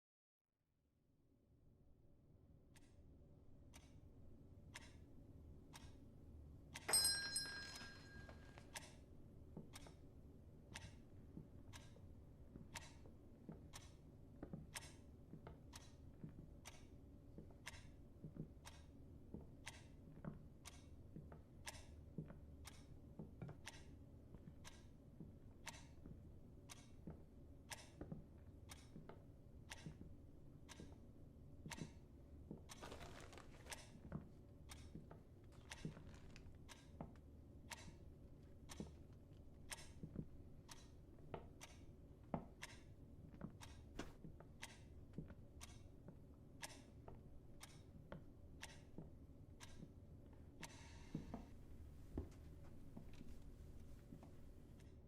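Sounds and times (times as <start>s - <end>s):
faint steady ticking: 2.7s - 32.8s, 33.7s - 55.0s
short metallic ring: 6.9s - 8.6s.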